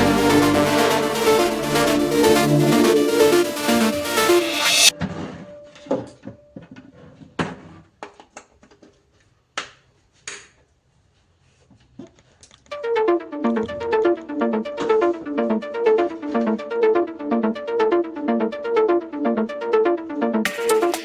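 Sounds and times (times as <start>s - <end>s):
electronic background music: 0.0s - 5.8s, 12.7s - 21.0s.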